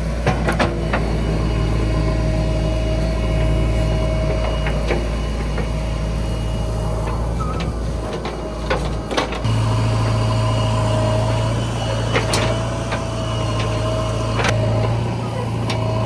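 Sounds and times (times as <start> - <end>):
heavy machinery diesel engine: 0.0 - 16.0.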